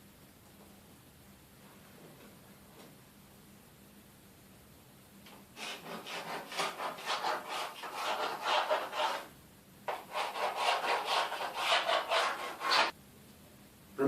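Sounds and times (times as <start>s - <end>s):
pencil scraping strokes: 5.6s - 9.3s, 9.9s - 12.9s.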